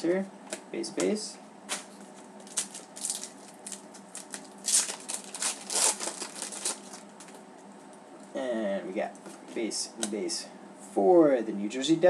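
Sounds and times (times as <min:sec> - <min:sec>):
trading cards rustling: 0:01.7 - 0:07.4.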